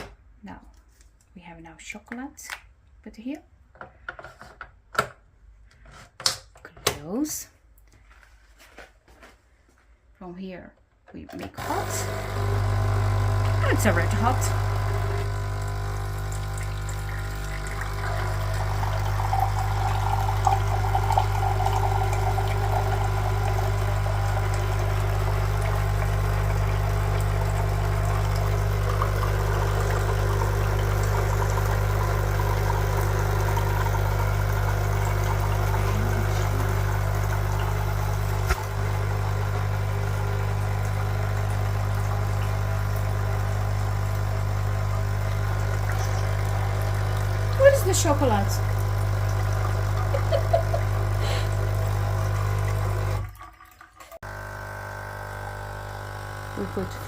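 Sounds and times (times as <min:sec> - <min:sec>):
coffee machine pump buzzing: 0:11.4 - 0:53.3, 0:54.2 - 0:57.0.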